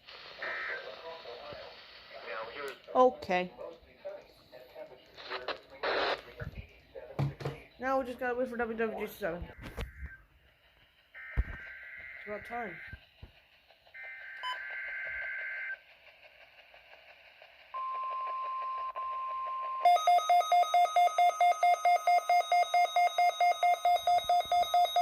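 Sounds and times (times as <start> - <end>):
rapid loud beeping: 11.1 - 13.0, 14.0 - 15.8, 17.8 - 25.0
steady warning alarm tone: 11.2 - 13.0, 13.9 - 15.8, 17.8 - 25.0.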